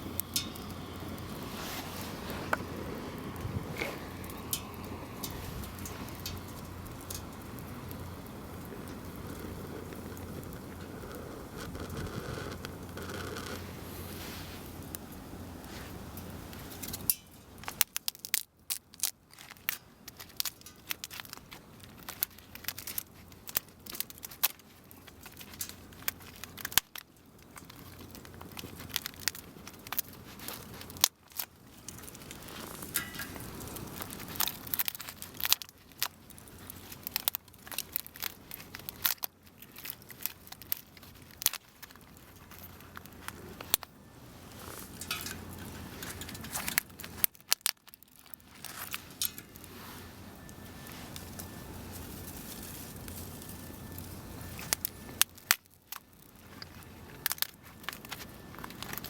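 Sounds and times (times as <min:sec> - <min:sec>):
low steady rush: 0:00.0 - 0:17.1
wood fire crackling: 0:00.0 - 0:59.0.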